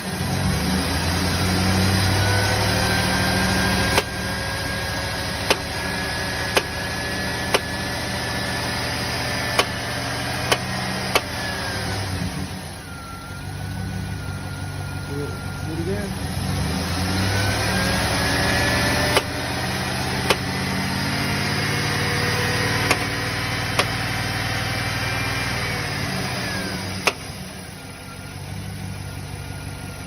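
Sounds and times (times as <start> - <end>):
engine idling: 0.0 - 16.5, 17.2 - 30.0
sharp engine pops: 3.9 - 4.2, 5.4 - 5.8, 6.5 - 6.8, 7.5 - 7.8, 9.5 - 11.4, 19.1 - 19.4, 20.2 - 20.6, 22.8 - 24.0, 27.0 - 27.3.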